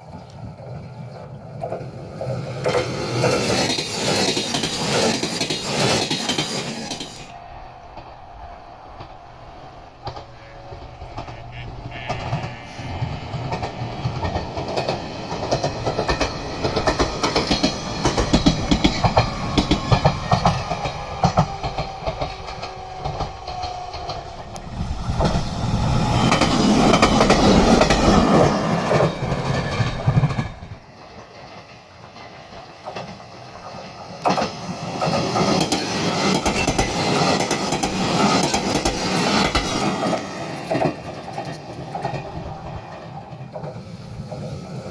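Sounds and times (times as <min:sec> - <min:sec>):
train wheels clacking on rails: 0:01.6 - 0:44.9.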